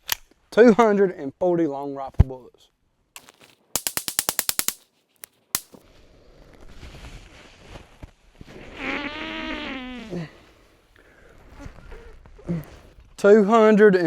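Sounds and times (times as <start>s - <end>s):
sharp rifle report: 3.2s - 4.8s, 5.6s - 5.8s
rifle shots in rapid string: 3.8s - 4.8s.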